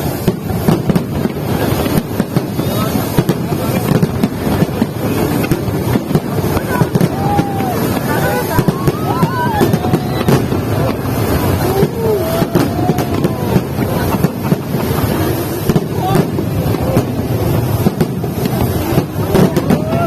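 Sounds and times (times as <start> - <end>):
crowd chatter: 0.0 - 20.0
wind rumbling on microphone: 0.0 - 20.0.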